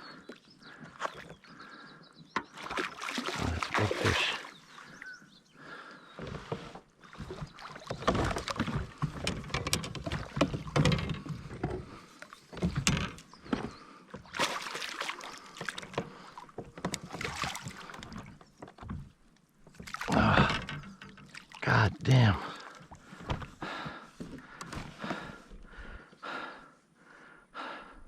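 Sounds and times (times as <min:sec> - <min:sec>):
water splashing: 0:02.6 - 0:05.0, 0:14.2 - 0:18.4, 0:19.8 - 0:23.2
knocks and clicks on kayak: 0:06.2 - 0:14.3, 0:15.6 - 0:21.6, 0:22.8 - 0:25.7.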